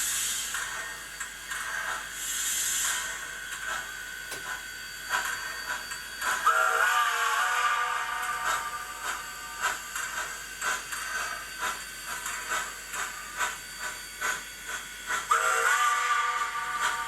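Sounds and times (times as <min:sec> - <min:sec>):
model steam locomotive chuffs: 0:00.0 - 0:17.0
steam whistle: 0:06.4 - 0:08.9, 0:15.3 - 0:17.0.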